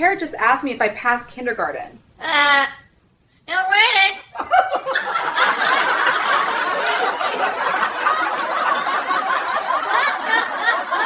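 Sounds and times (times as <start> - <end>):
crowd laughing: 4.4 - 11.0.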